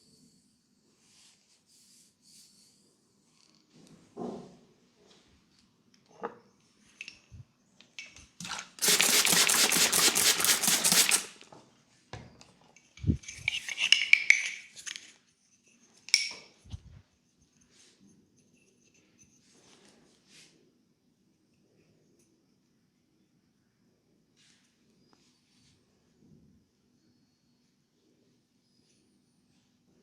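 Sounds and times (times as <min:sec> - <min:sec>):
scratchy rustling: 0:08.4 - 0:11.3
hands rubbing hair and scalp: 0:08.4 - 0:11.4.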